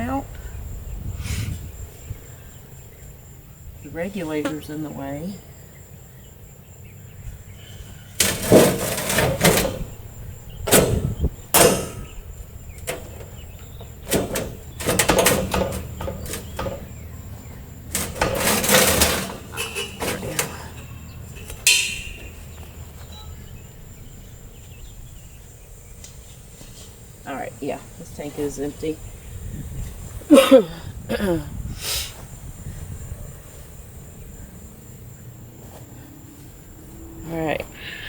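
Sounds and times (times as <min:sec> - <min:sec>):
metal tank scraping and clunking: 0:07.8 - 0:24.0.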